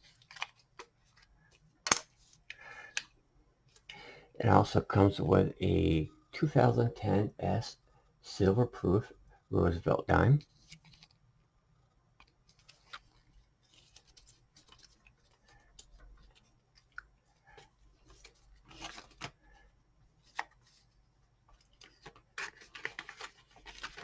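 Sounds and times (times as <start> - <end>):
soft rustling of handled objects: 0.0 - 4.0, 10.1 - 24.0.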